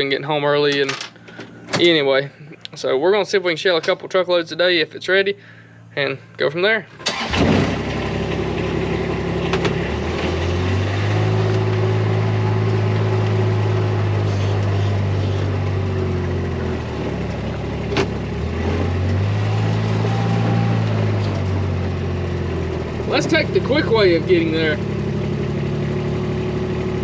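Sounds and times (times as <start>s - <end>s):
vehicle engine driving off: 7.0s - 27.0s.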